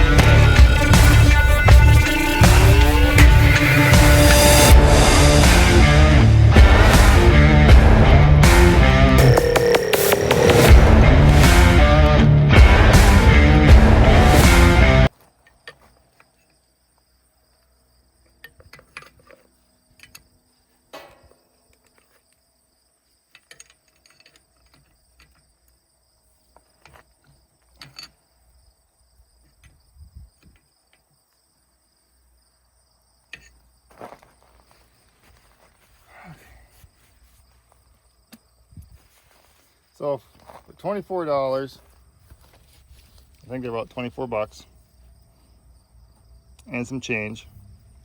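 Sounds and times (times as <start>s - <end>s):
music: 0.0s - 15.1s.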